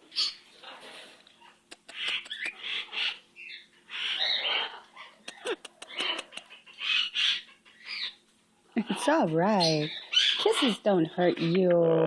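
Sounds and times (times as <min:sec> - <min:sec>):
kissy sounds: 0:01.7 - 0:02.6, 0:05.2 - 0:06.5
parrot harsh raspy squawks: 0:01.9 - 0:03.2, 0:03.9 - 0:08.2.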